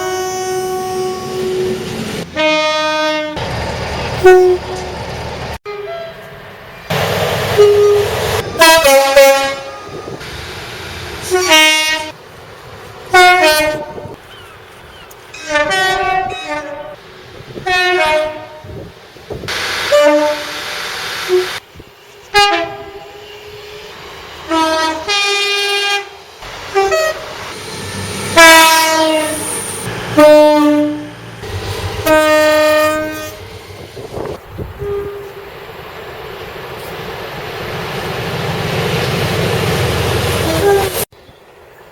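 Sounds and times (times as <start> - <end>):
two-tone locomotive horn blasts: 0.0 - 3.4, 4.2 - 4.9, 5.6 - 6.4, 7.5 - 10.2, 11.2 - 12.2, 13.1 - 14.2, 15.4 - 17.0, 17.6 - 18.8, 19.9 - 20.7, 21.3 - 27.4, 28.2 - 35.5, 40.4 - 41.1
train rumble: 0.0 - 41.9.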